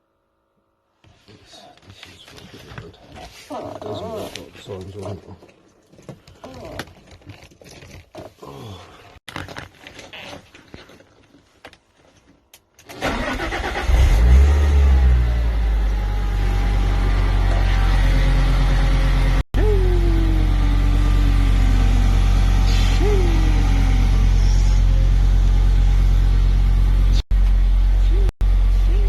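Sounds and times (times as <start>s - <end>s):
car engine starting and idling: 12.8s - 29.0s.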